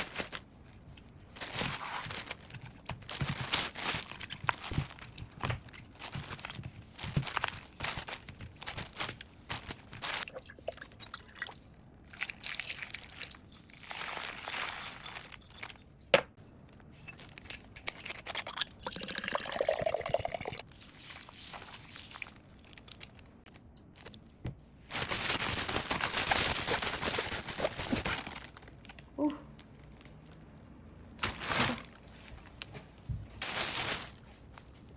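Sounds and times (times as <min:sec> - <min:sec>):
rustling and crinkling: 0:00.0 - 0:10.3, 0:20.9 - 0:30.2, 0:31.1 - 0:34.9.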